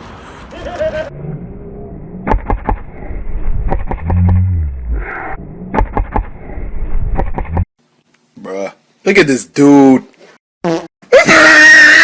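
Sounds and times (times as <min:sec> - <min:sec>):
loud low rumble: 0:01.1 - 0:07.2.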